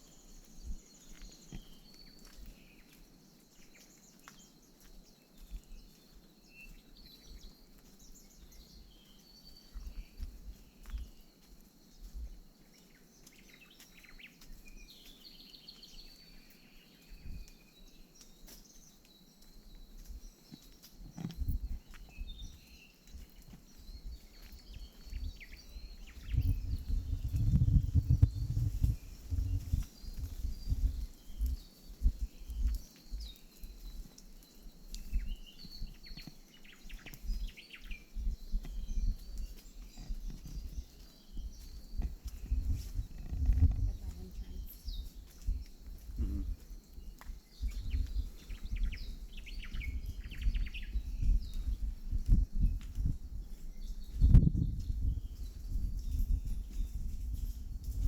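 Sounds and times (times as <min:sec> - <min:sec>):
bird chirps: 0:12.8 - 0:33.9, 0:34.9 - 0:52.7
bumping on microphone: 0:26.1 - 0:31.0, 0:42.0 - 0:44.7.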